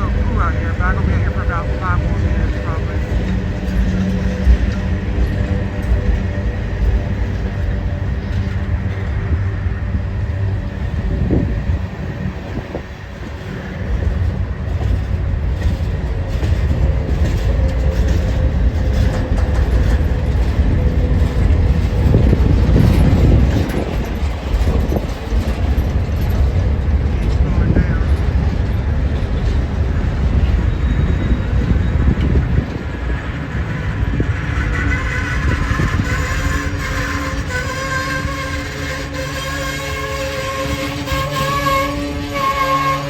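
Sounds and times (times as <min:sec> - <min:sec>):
freight train rumbling: 0:00.0 - 0:43.0
wheels clicking over rail joints: 0:13.9 - 0:41.8.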